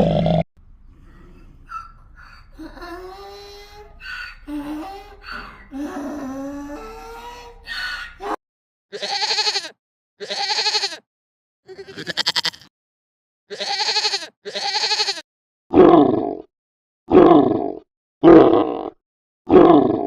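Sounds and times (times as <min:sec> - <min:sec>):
deep animal call: 0:00.0 - 0:08.4
sheep or goat bleating: 0:08.9 - 0:11.0, 0:11.7 - 0:12.7, 0:13.5 - 0:15.2.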